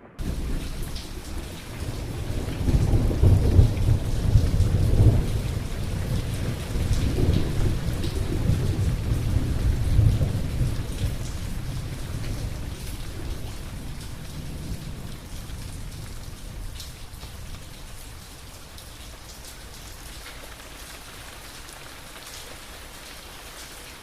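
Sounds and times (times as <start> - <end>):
rolling thunder: 0.0 - 19.0
steady rain: 0.0 - 24.0.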